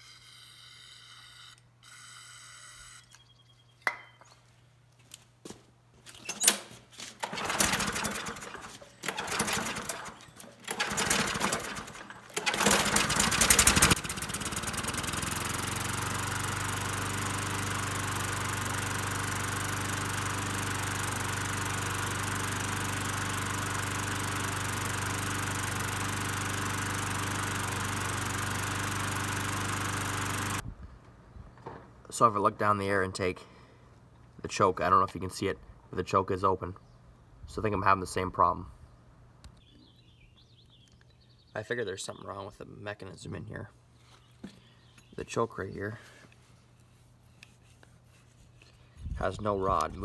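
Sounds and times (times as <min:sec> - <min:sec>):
lawnmower pull-start sputters: 0:06.1 - 0:30.6
lawnmower engine running: 0:06.3 - 0:30.6.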